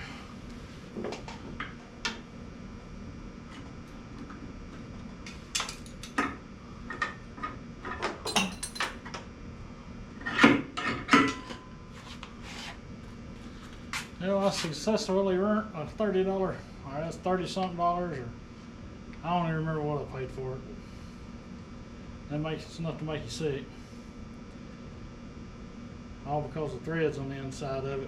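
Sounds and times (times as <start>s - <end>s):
metal tools clinking and scraping: 8.3s - 9.0s.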